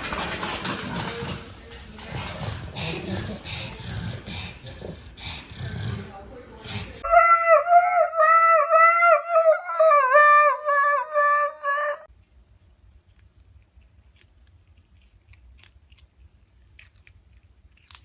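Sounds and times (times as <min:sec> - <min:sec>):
dog howling: 0:07.0 - 0:12.1.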